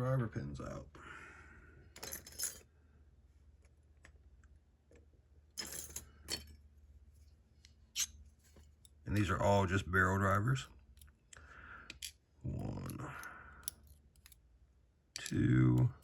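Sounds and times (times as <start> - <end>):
metal lock pins clinking: 11.9 - 12.2, 12.8 - 14.5, 15.2 - 16.0.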